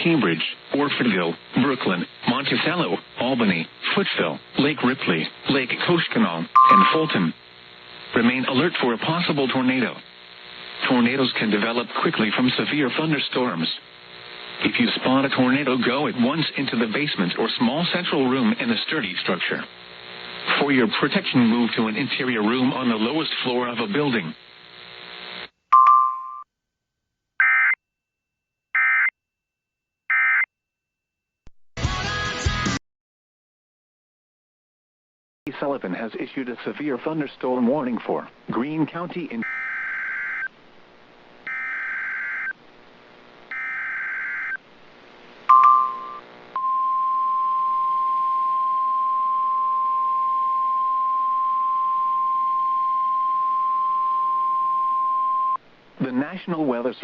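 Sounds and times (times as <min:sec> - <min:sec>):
radio hiss: 0:00.0 - 0:25.5, 0:35.5 - 0:39.6, 0:55.7 - 0:57.0
short beep: 0:06.6 - 0:07.2
steady warning alarm tone: 0:06.6 - 0:07.3, 0:39.4 - 0:40.5, 0:41.5 - 0:42.5, 0:43.5 - 0:44.6
digital data bursts: 0:06.6 - 0:07.5, 0:39.4 - 0:40.5
music: 0:31.8 - 0:32.8
buzzing digital data bursts: 0:41.4 - 0:42.6, 0:43.5 - 0:44.6.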